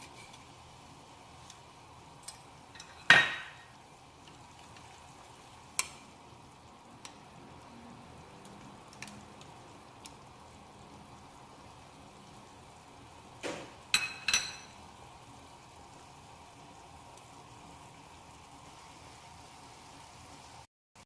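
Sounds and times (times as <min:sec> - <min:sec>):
hiss of cooking: 0:00.0 - 0:20.7
metal cookware clinking: 0:02.2 - 0:03.8, 0:13.9 - 0:14.8.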